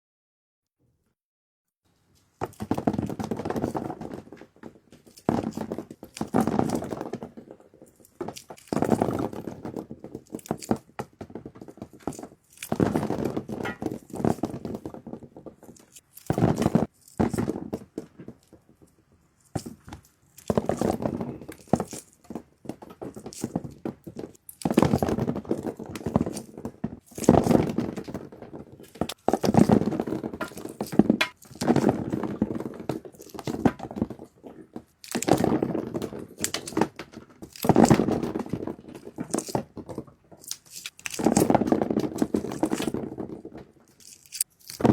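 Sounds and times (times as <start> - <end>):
crinkling and rustling: 1.9 - 44.9
handling thuds and knocks: 19.6 - 34.2.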